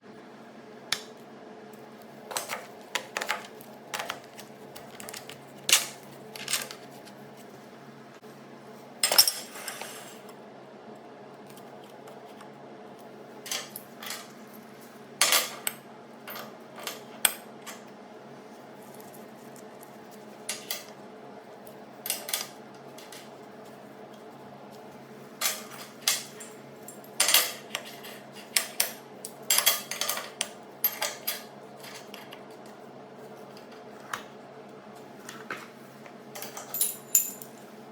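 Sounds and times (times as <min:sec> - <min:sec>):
metal parts clinking: 0:36.4 - 0:37.5.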